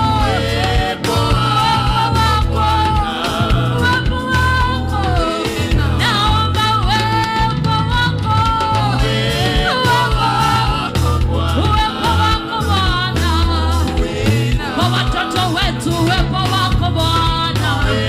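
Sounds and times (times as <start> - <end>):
bass and drums: 0.0 - 18.0
person singing: 8.2 - 18.0.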